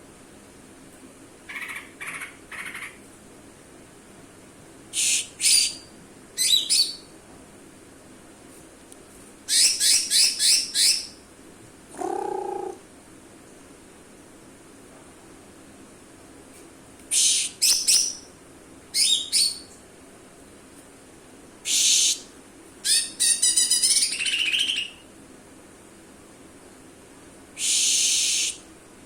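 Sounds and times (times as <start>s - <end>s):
bird whistled calls: 5.0s - 7.1s, 9.5s - 11.1s, 17.1s - 18.2s, 21.7s - 22.2s, 27.6s - 28.6s.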